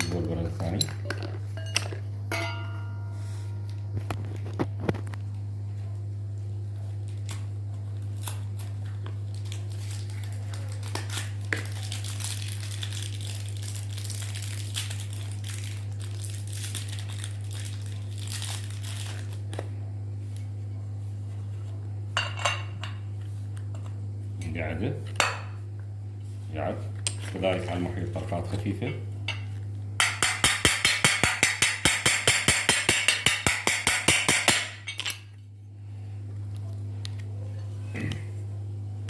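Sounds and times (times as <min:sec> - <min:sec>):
steady low hum: 0:00.0 - 0:39.0
crinkling rustle: 0:07.0 - 0:19.6.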